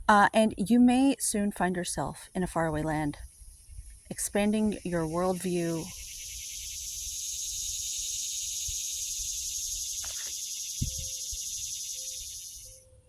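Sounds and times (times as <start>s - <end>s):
cicada buzzing: 3.2s - 13.0s.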